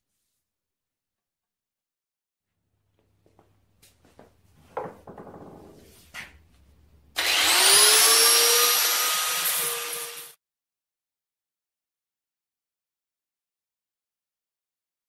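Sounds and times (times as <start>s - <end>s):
power tool motor whine: 7.2s - 10.4s.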